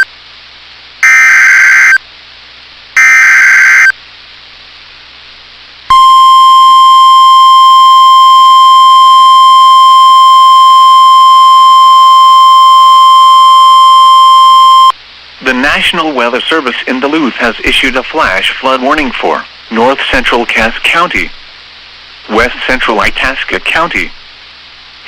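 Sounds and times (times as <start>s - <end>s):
buzzy digital data squawk: 1.0s - 2.0s, 3.0s - 4.0s
steady single-pitch alarm tone: 1.0s - 2.0s, 3.0s - 4.0s, 5.9s - 15.0s.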